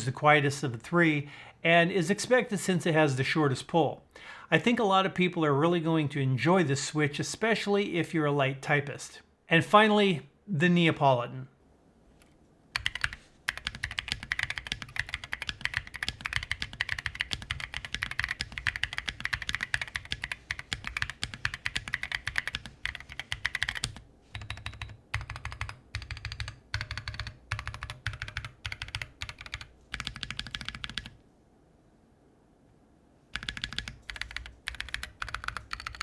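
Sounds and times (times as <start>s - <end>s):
mechanical keyboard typing: 12.8s - 31.2s, 33.3s - 36.0s.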